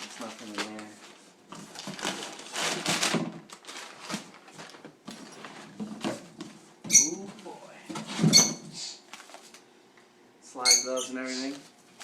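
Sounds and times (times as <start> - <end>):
cardboard packaging rustling: 0.0 - 6.6, 9.1 - 9.6.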